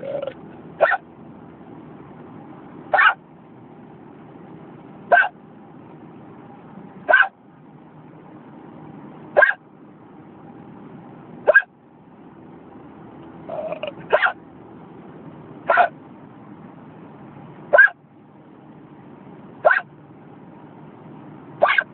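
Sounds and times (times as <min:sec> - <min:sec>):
person hiccuping: 0:00.0 - 0:00.4, 0:13.5 - 0:14.1
car cabin hum: 0:00.0 - 0:21.9.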